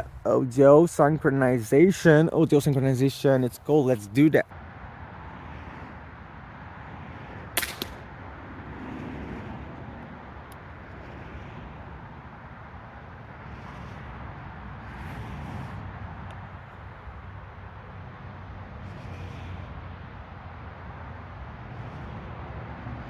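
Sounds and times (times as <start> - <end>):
low outdoor rumble and hiss: 0.0 - 5.9, 6.6 - 23.0
sharp crack: 7.6 - 8.2.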